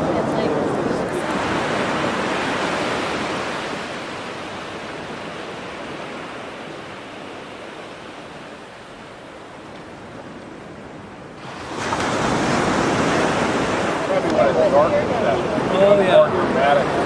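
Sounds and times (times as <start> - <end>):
ocean surf washing on beach: 0.0 - 17.0.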